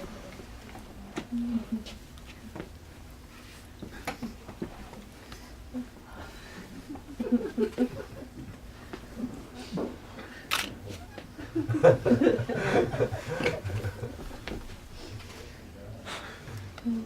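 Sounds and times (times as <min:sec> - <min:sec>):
person chuckling: 0:06.7 - 0:08.6, 0:10.9 - 0:14.4.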